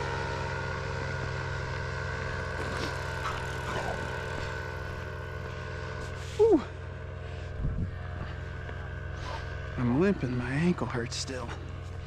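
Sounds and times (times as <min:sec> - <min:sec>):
paramotor engine running: 0:00.0 - 0:12.0.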